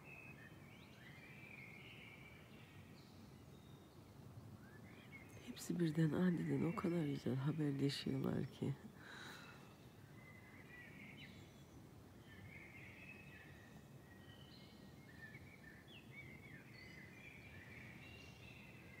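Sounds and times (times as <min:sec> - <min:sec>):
birds dawn chorus chirping: 0:00.0 - 0:19.0
low background hiss: 0:00.0 - 0:19.0.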